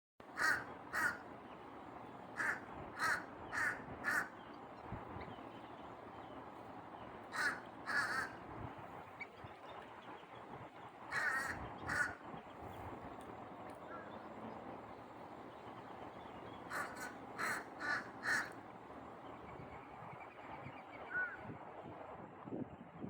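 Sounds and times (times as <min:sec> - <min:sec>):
bird giving harsh calls: 0:00.4 - 0:01.3, 0:02.4 - 0:04.4, 0:07.3 - 0:08.4, 0:11.1 - 0:12.2, 0:16.5 - 0:18.7.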